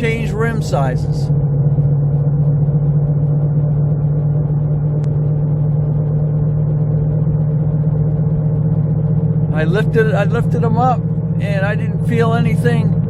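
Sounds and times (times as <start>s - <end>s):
low hum from car wheels: 0.0s - 13.0s
road noise: 0.0s - 13.0s.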